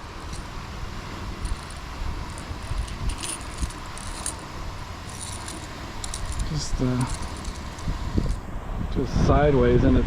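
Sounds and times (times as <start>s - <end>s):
fishing tackle jingling: 0.0s - 0.5s, 1.4s - 8.4s
wind rumble on microphone: 0.0s - 10.0s.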